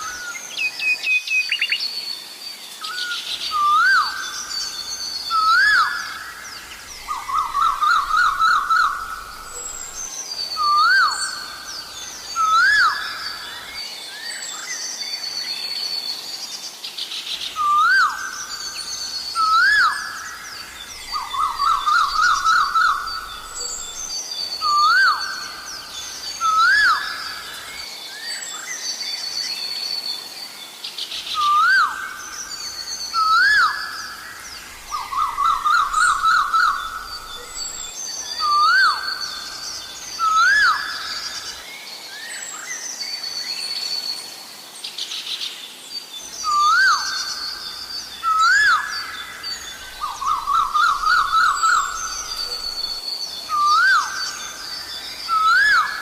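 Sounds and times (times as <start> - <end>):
small birds chirping: 16.4 - 44.0, 44.8 - 56.0
koel whistled calls: 33.1 - 34.0, 34.8 - 39.5, 46.4 - 56.0.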